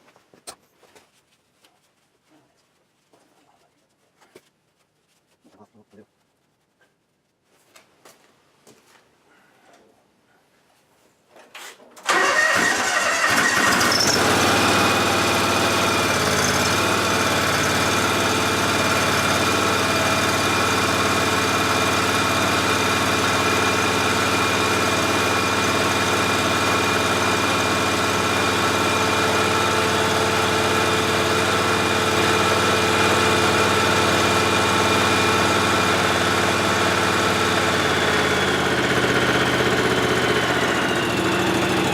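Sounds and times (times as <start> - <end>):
lawn tractor engine running: 12.0 - 41.9.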